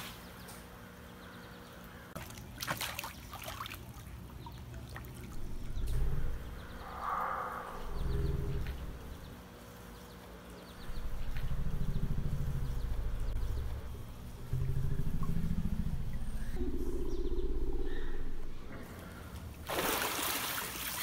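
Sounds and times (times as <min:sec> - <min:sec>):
water lapping and trickling: 0:02.0 - 0:08.0, 0:17.9 - 0:21.0
low rumbles: 0:05.2 - 0:09.6, 0:10.6 - 0:19.7.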